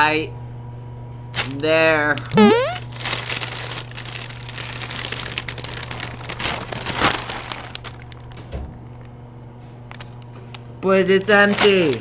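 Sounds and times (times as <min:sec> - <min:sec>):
plastic bag crinkling: 0:02.8 - 0:08.4, 0:11.3 - 0:12.0.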